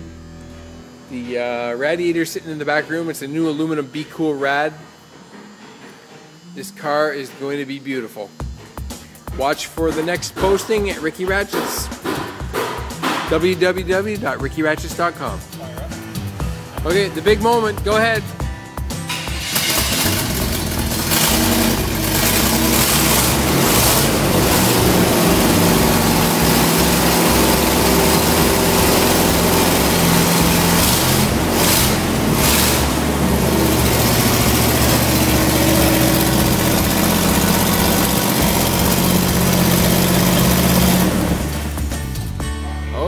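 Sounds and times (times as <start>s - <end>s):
car engine running loudly: 19.4s - 42.3s.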